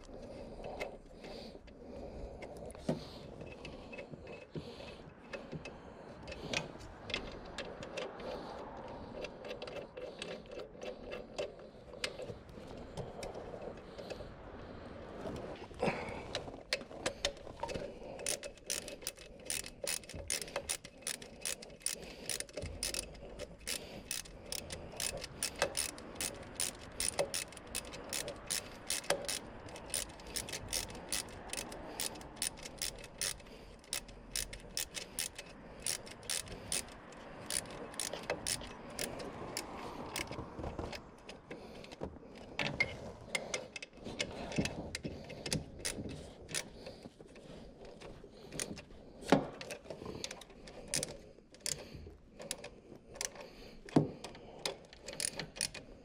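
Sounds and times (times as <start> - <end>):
ratchet wrench clicking: 17.0 - 40.4, 45.4 - 46.8, 50.3 - 53.4, 54.7 - 56.0.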